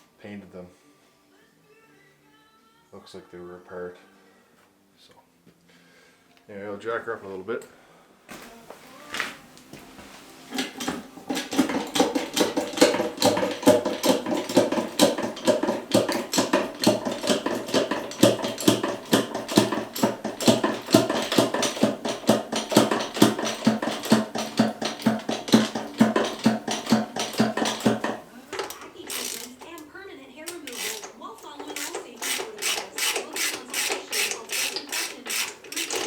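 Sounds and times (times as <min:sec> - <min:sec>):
hydraulic jack squeaking: 0:10.6 - 0:29.8, 0:30.4 - 0:36.0.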